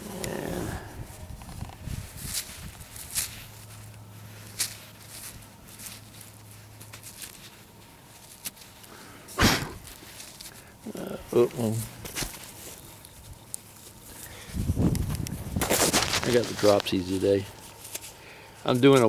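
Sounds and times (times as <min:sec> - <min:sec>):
hands rustling soil: 0:00.0 - 0:19.0.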